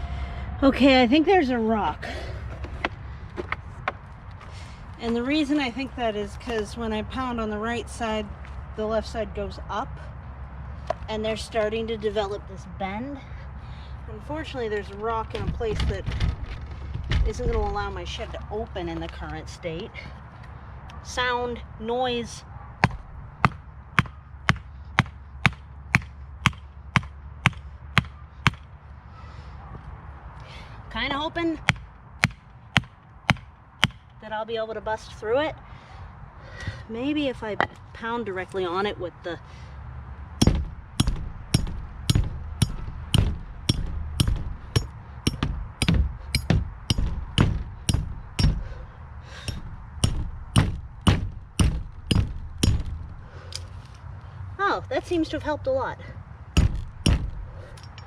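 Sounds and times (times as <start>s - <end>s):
sledgehammer striking metal: 40.4s - 48.8s, 49.4s - 53.2s, 56.6s - 57.5s.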